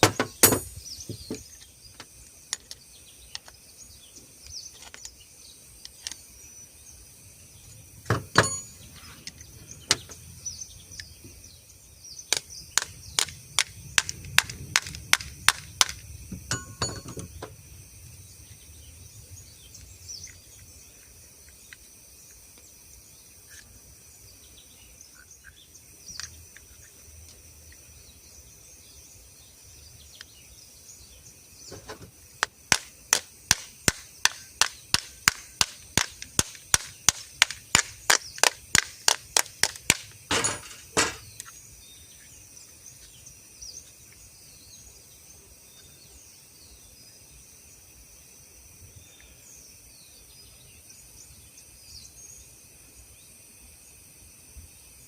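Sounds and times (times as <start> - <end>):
sharp knocks: 0.0 - 1.4, 31.7 - 41.3
crickets chirring: 0.0 - 55.0.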